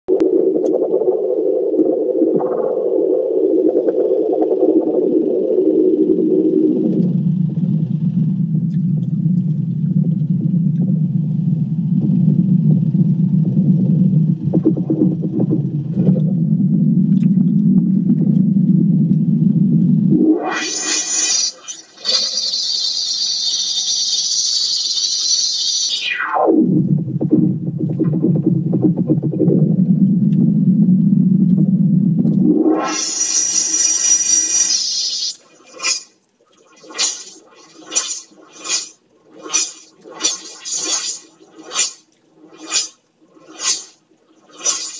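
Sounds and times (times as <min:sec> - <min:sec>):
low droning hum: 0:00.1 - 0:22.0, 0:26.0 - 0:34.5
synthesized hissing tone sweeping down: 0:00.2 - 0:17.0, 0:19.3 - 0:30.0, 0:31.2 - 0:44.9.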